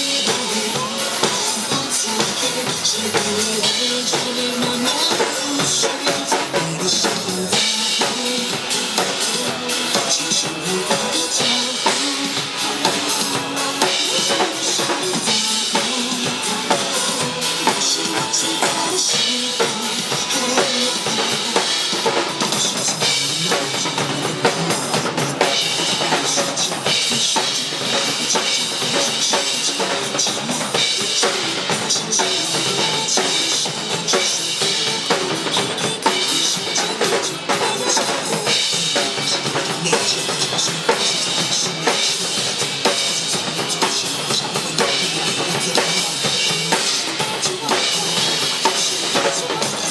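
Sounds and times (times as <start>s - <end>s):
drum kit beat: 0.0s - 49.9s
pop band playing: 0.0s - 49.9s.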